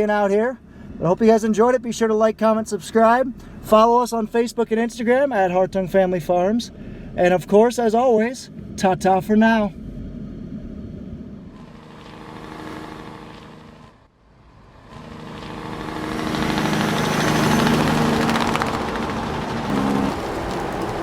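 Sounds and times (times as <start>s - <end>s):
harvest machinery engine running: 8.5s - 14.0s, 14.8s - 21.0s
rushing noise: 8.5s - 21.0s.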